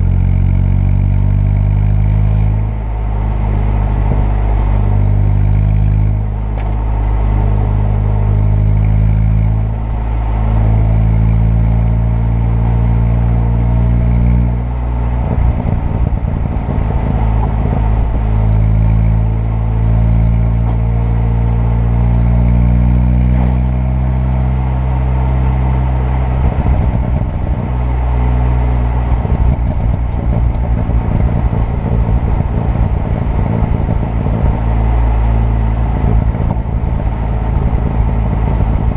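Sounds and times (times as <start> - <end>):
car engine revving: 0.0 - 38.9
exhaust crackles and pops: 0.0 - 38.9.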